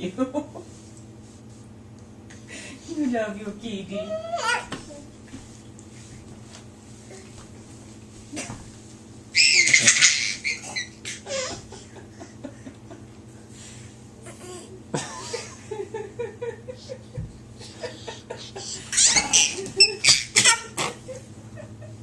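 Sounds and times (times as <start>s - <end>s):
baby babbling: 4.2s - 5.1s
baby squealing with laughter: 9.3s - 11.5s, 18.9s - 21.0s.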